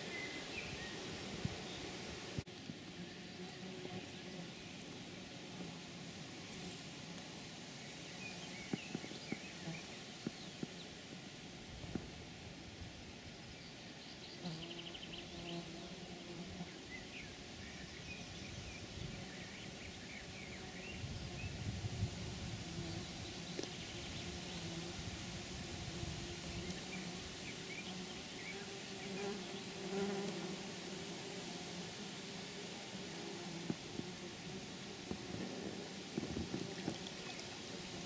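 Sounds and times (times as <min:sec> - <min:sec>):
insect buzzing: 0:19.0 - 0:38.0.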